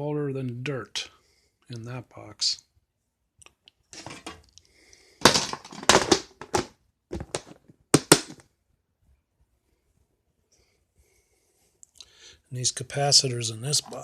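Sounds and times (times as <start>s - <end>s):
hard objects clattering together: 4.0s - 4.5s, 5.2s - 8.4s.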